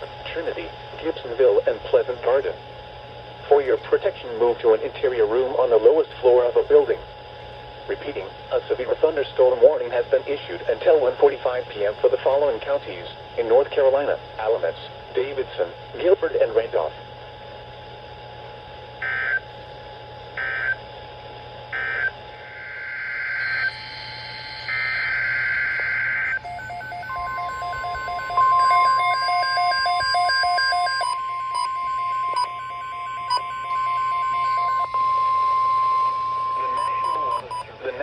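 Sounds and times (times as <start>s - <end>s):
steady attention tone: 19.0s - 38.0s
digital data bursts: 21.8s - 38.0s
rapid electronic beeping: 21.8s - 38.0s.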